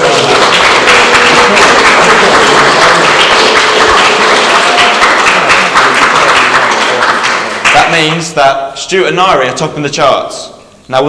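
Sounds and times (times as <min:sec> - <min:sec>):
audience applauding: 0:00.0 - 0:08.2.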